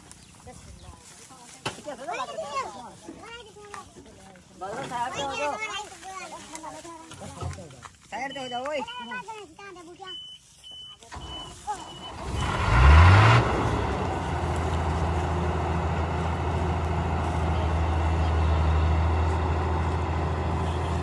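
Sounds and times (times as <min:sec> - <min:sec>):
high-pitched warning beeps: 0:10.0 - 0:12.2
heavy diesel engine revving: 0:11.1 - 0:21.0.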